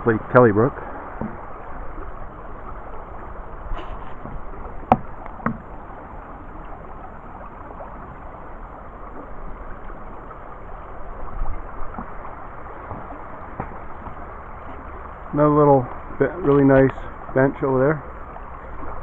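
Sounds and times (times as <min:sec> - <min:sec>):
brook water rushing: 0:00.0 - 0:19.0
sharp knocks: 0:01.2 - 0:01.4, 0:04.2 - 0:05.7, 0:12.8 - 0:14.3.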